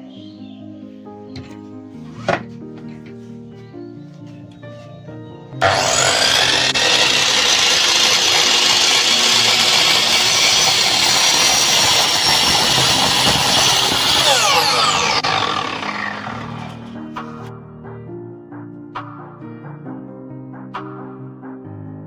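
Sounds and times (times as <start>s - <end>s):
power tool motor spinning: 5.6s - 17.4s.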